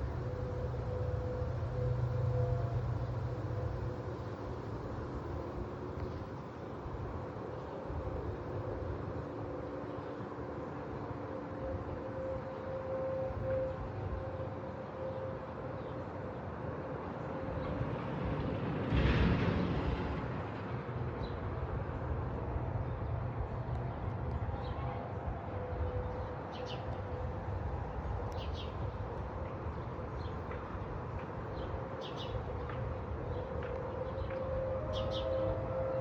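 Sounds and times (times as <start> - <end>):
distant warning siren: 0.0 - 20.7, 21.7 - 36.0
wind: 0.0 - 36.0.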